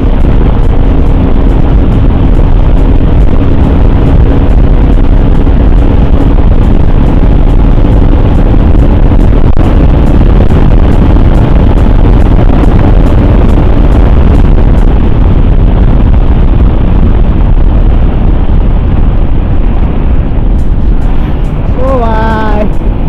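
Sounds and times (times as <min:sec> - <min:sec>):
motorcycle engine running: 0:00.0 - 0:23.0
wind noise on microphone: 0:00.0 - 0:23.0.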